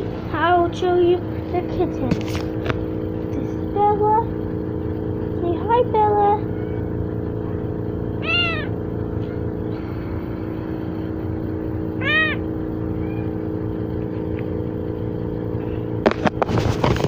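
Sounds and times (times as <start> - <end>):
steady low hum: 0.0 - 17.0
knocks and rustling: 2.0 - 2.8, 16.0 - 17.0
kitten meowing: 8.2 - 8.8, 12.0 - 13.4.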